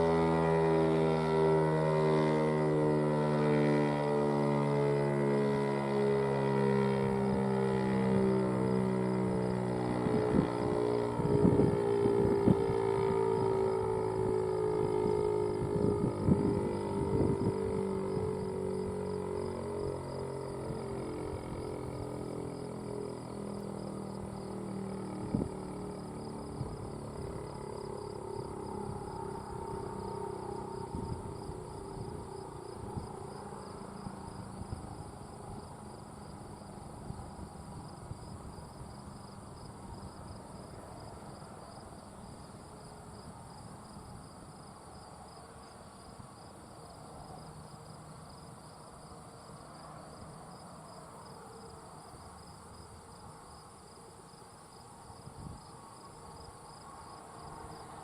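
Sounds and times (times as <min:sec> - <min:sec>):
siren winding down: 0:00.0 - 0:22.8
insects buzzing: 0:00.0 - 0:58.0.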